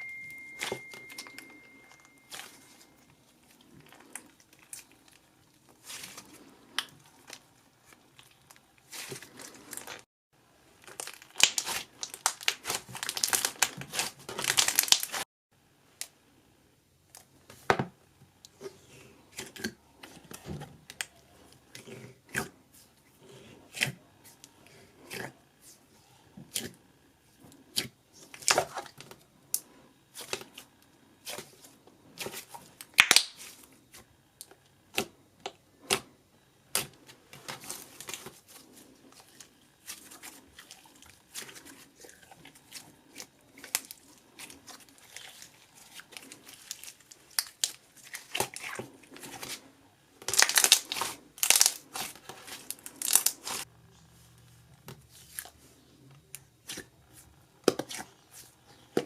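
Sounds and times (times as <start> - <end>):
slime squishing with sticky clicks: 10.8 - 15.2.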